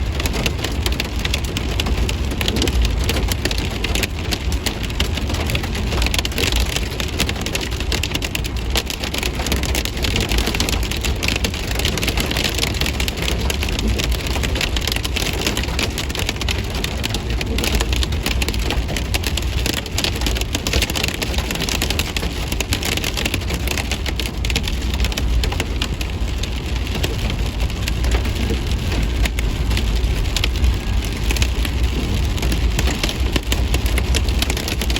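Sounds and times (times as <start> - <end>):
hail pelting hard surfaces: 0.0 - 34.9
low rumble: 24.3 - 34.8.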